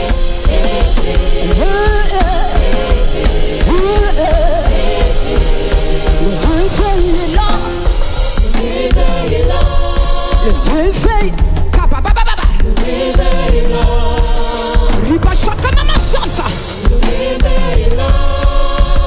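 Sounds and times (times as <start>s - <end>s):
person singing: 0.0s - 7.9s
band with drums and heavy bass: 0.0s - 19.0s.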